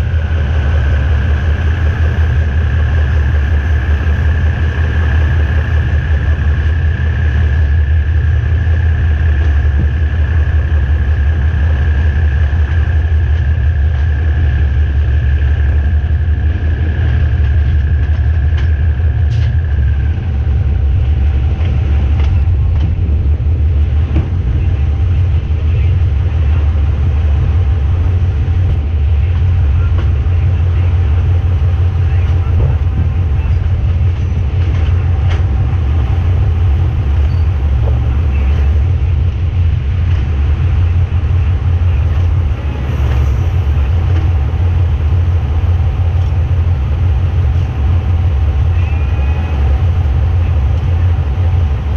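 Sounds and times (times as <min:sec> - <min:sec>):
high whine: 0:00.0 - 0:51.9
locomotive engine rumble: 0:00.0 - 0:51.9
sharp clicks and knocks: 0:17.0 - 0:19.9, 0:21.5 - 0:23.2, 0:32.2 - 0:36.1.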